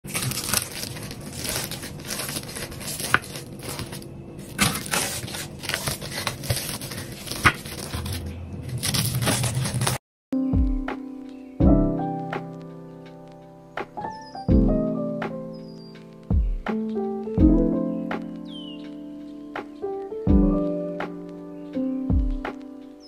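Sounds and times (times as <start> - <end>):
pastry crunching: 0.0 - 10.0.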